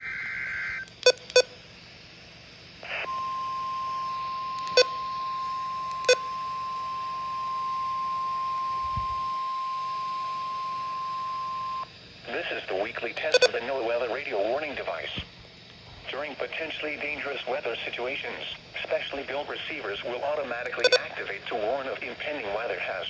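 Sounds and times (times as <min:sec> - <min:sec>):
short loud beeps: 0:01.0 - 0:01.5, 0:04.6 - 0:04.9, 0:13.2 - 0:13.6, 0:20.7 - 0:21.0
steady alert tone: 0:13.2 - 0:13.5, 0:20.7 - 0:21.0.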